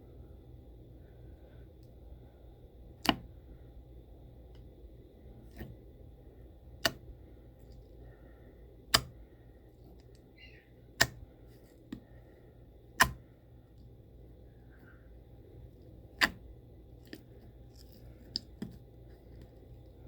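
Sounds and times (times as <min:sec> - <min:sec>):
slime squishing with sharp pops: 0:13.0 - 0:13.3.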